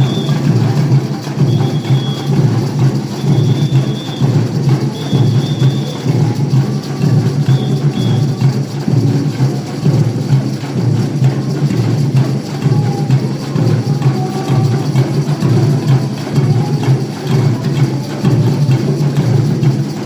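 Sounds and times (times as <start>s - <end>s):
drum beats: 0.0s - 20.0s
live band playing: 0.0s - 20.0s.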